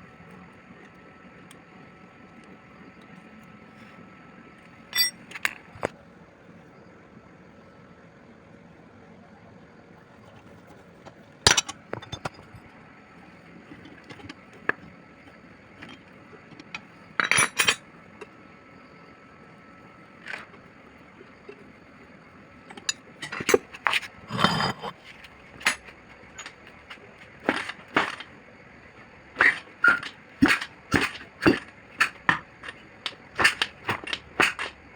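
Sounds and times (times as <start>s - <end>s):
metallic clinks of tools: 4.9s - 5.2s.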